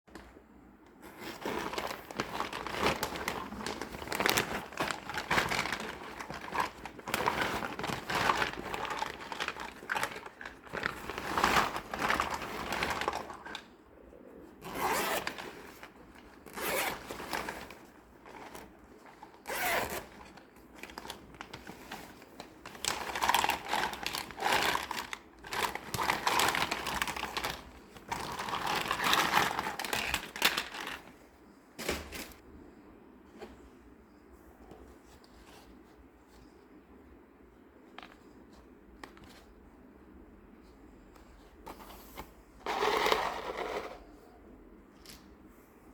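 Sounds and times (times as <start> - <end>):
packaging crinkling and tearing: 1.1 - 13.7, 14.6 - 31.1.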